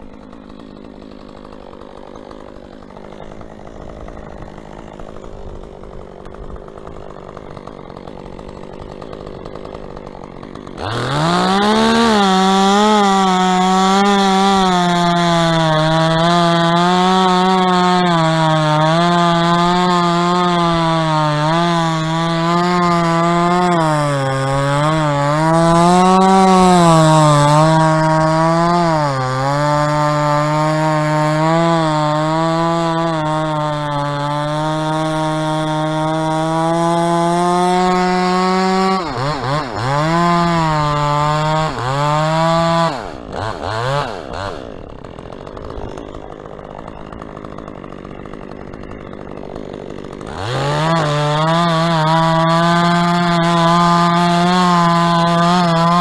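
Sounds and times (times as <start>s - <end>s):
chainsaw revving: 0.0s - 56.0s.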